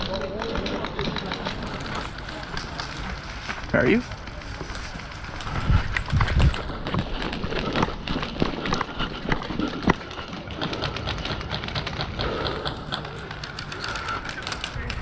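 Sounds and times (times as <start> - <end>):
sharp irregular clicks and taps: 0.0 - 3.0.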